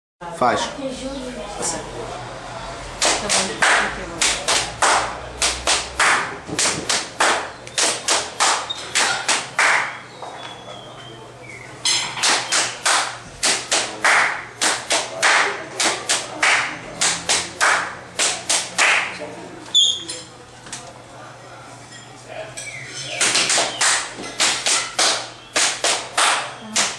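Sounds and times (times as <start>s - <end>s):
hand claps: 3.0s - 10.0s, 12.2s - 19.2s, 23.2s - 26.9s.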